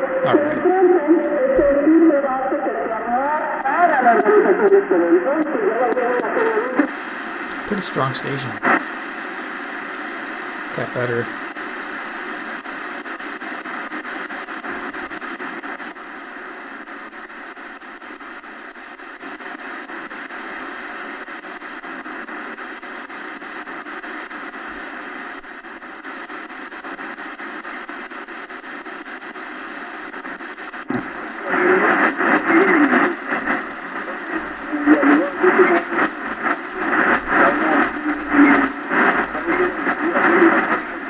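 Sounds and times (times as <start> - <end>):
radio static hiss: 0.0 - 0.7, 6.8 - 41.0
voice on radio: 0.0 - 0.7, 7.5 - 8.8, 10.8 - 11.4, 30.9 - 31.2
radio click: 7.5 - 8.7, 10.8 - 11.3, 30.9 - 31.3.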